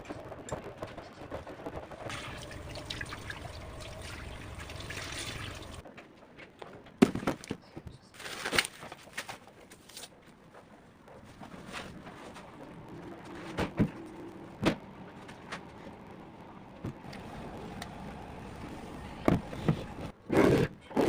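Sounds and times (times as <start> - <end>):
liquid pouring: 2.1 - 5.8.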